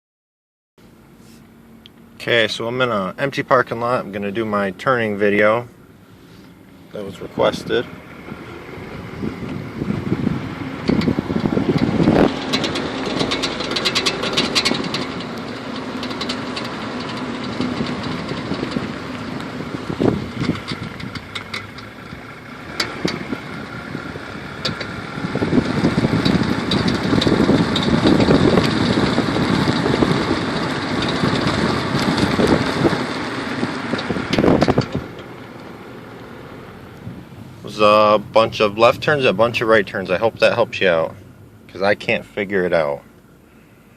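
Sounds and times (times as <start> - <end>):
car engine and tyres running: 0.8 - 43.9
sharp clicking from car: 9.3 - 23.6, 24.6 - 37.1.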